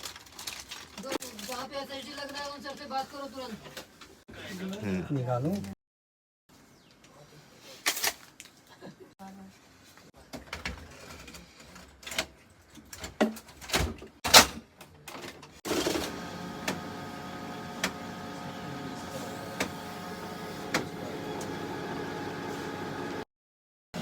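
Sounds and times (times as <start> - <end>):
printer motor and gears whining: 15.7 - 23.2.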